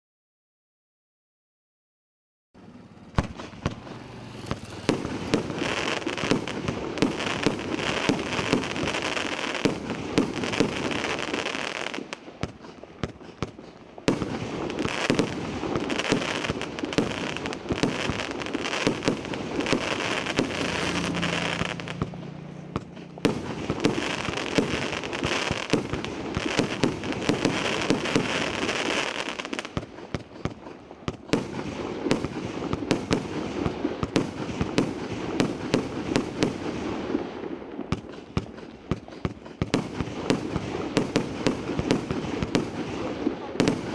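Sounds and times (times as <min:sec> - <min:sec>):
firework crackling and popping: 0:02.8 - 0:43.9
firework hissing burn: 0:03.2 - 0:30.2.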